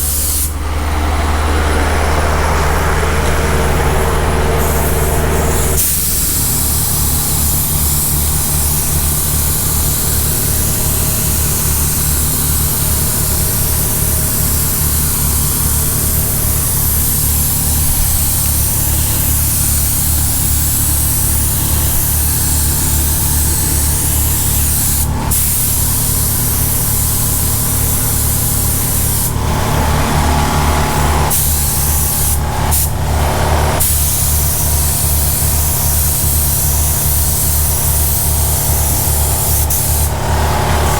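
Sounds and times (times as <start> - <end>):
low pulsing machine hum: 0.0 - 40.9
spray gun hissing: 0.0 - 40.9.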